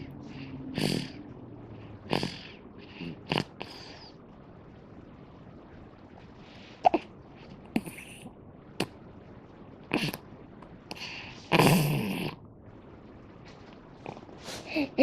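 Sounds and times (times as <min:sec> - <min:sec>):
baby snoring softly: 0:00.0 - 0:01.2, 0:02.0 - 0:04.1, 0:10.9 - 0:12.4
breathy nasal snuffles: 0:02.1 - 0:04.1.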